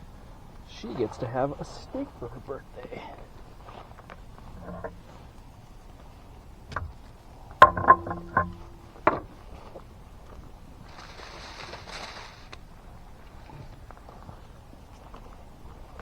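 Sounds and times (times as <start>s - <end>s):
knocks and clanks: 4.4s - 5.3s, 6.6s - 9.9s.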